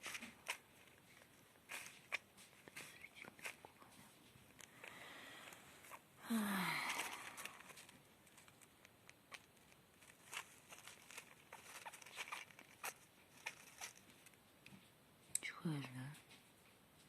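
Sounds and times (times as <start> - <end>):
hamster rustling in bedding: 0.0 - 6.0, 9.4 - 14.3.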